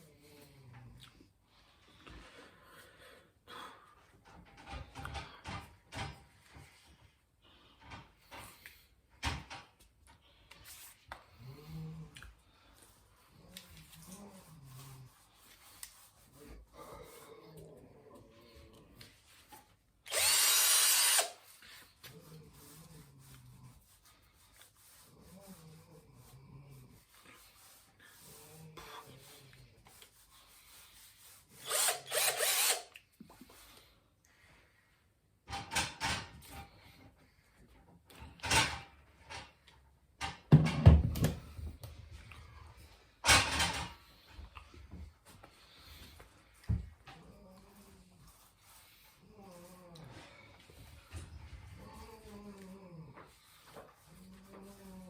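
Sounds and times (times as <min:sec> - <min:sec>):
faint rubbing and handling noises: 0:00.0 - 0:20.0, 0:21.4 - 0:31.6, 0:41.4 - 0:55.0
power tool burst: 0:20.1 - 0:21.4, 0:31.7 - 0:32.9.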